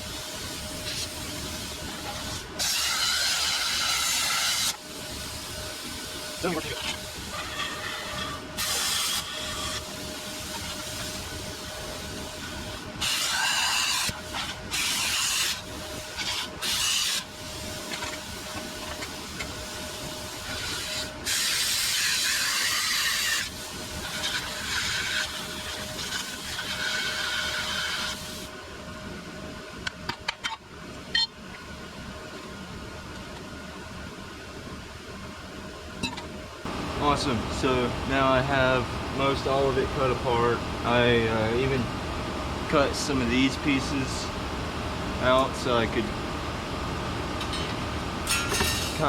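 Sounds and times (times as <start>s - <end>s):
plasma cutter air hiss: 0.0s - 28.5s, 48.3s - 49.0s
plasma arc cutting bursts: 0.3s - 4.8s, 6.4s - 11.6s, 13.0s - 17.4s, 20.3s - 28.5s.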